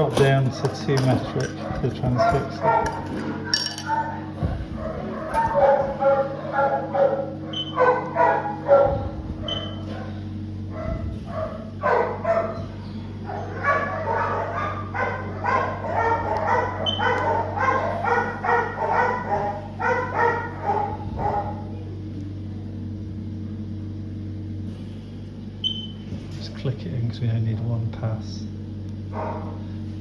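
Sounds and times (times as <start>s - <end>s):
steady low hum: 0.0s - 30.0s
dog barking: 0.2s - 21.8s, 29.1s - 29.6s.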